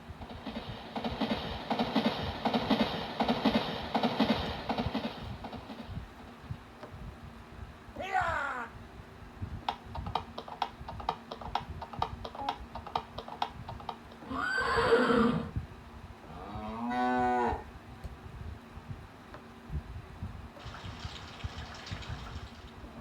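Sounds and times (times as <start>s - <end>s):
horse hooves clip-clopping: 0.2s - 6.3s, 9.6s - 14.2s
horse whinny: 14.2s - 15.5s
cow mooing: 16.3s - 17.7s.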